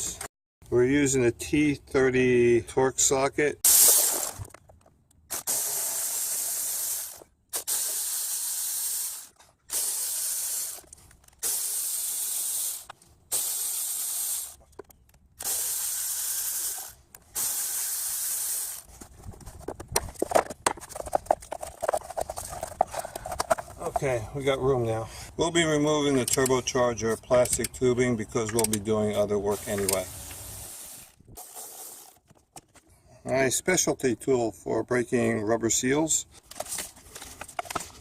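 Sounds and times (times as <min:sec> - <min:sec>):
pneumatic tool air hiss: 0:05.3 - 0:10.8, 0:11.4 - 0:14.6, 0:15.4 - 0:18.9, 0:29.6 - 0:32.2
metallic clicks and rattles: 0:26.2 - 0:26.6, 0:27.4 - 0:27.8.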